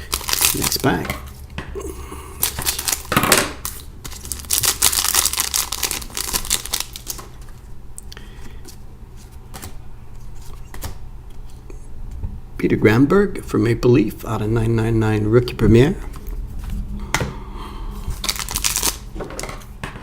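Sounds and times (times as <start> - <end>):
wrapper crinkling: 0.0 - 1.4, 2.4 - 7.7, 18.1 - 19.6.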